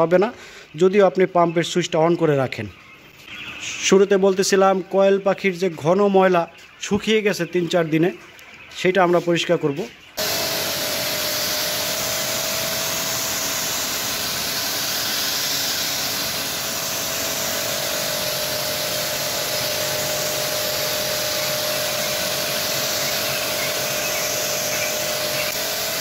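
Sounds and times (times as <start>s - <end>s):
high-pressure water jet hissing: 10.2s - 26.0s
pressure washer motor whine: 10.2s - 26.0s.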